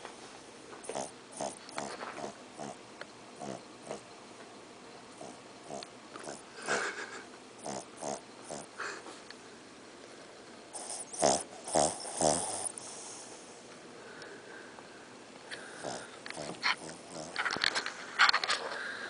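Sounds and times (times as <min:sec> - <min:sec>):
dog snoring loudly: 0:00.8 - 0:02.8, 0:03.4 - 0:04.1, 0:05.1 - 0:06.5, 0:07.6 - 0:08.8, 0:10.7 - 0:13.4, 0:15.6 - 0:17.6.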